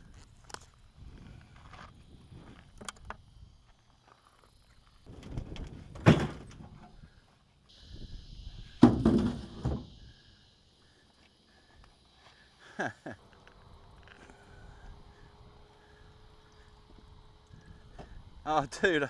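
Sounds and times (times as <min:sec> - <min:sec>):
steady high buzz: 0:00.0 - 0:19.0
heavy thunks: 0:05.1 - 0:07.0, 0:08.8 - 0:10.1.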